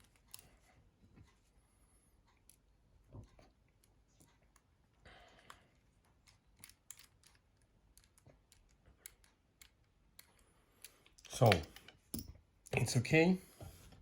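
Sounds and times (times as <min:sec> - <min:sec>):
small phone parts clicking: 0:00.0 - 0:00.6, 0:05.4 - 0:12.3.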